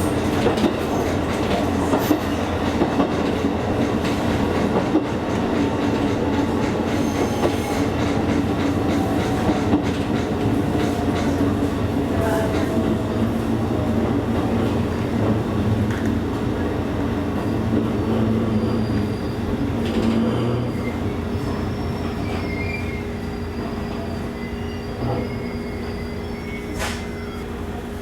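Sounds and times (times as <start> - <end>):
wheels rumbling on rail: 0.0 - 28.0
high brake squeals: 6.9 - 7.9, 18.4 - 19.8, 20.7 - 27.6.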